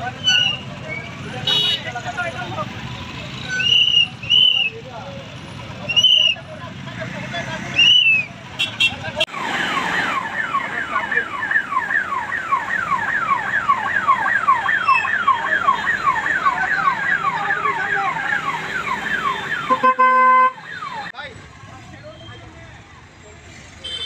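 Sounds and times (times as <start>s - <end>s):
electronic alarm siren wailing: 9.4s - 19.8s.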